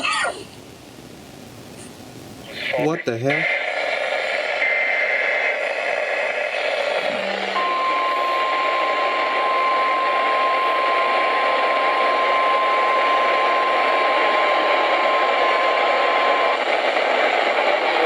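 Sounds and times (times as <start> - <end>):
radio static: 0.0 - 18.0
steady alarm beep: 5.8 - 16.5.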